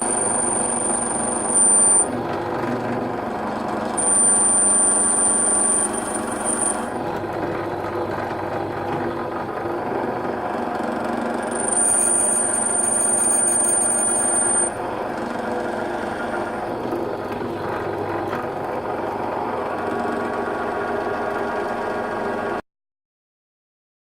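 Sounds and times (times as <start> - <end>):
thin high whine: 0.0 - 2.3, 3.8 - 7.1, 11.4 - 15.1
power tool running under load: 0.0 - 22.6.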